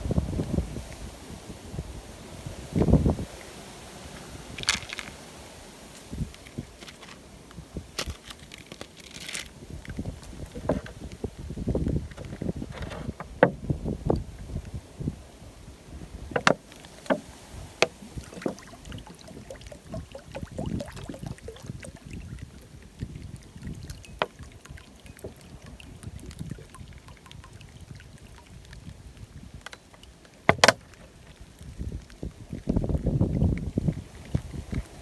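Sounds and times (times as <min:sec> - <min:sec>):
wind buffeting microphone: 0:00.0 - 0:03.4, 0:06.1 - 0:06.8, 0:09.6 - 0:29.6, 0:31.4 - 0:35.0.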